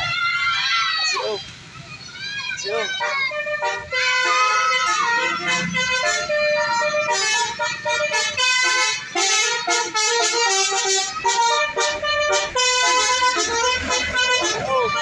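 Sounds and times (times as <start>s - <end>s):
bus horn playing a tune: 3.0s - 15.0s.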